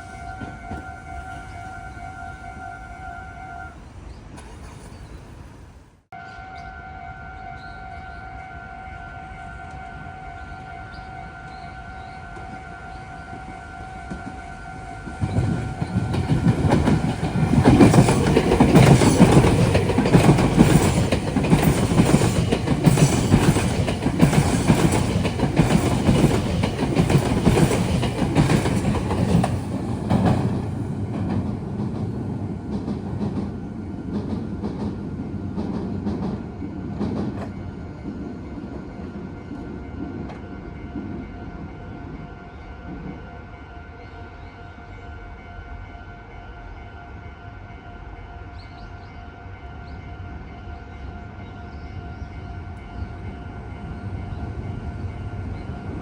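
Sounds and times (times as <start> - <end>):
electric train wheels clattering: 4.3 - 5.6, 15.0 - 41.2.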